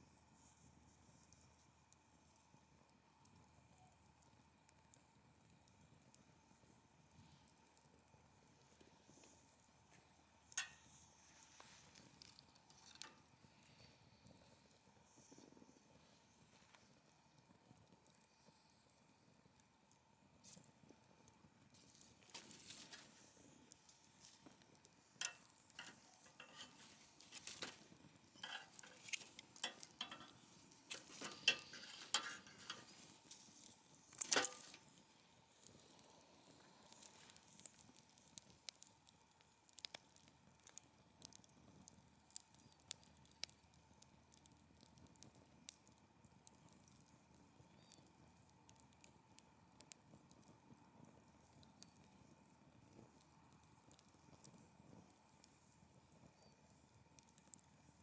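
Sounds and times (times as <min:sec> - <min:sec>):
wood fire crackling and popping: 0:00.2 - 0:58.0.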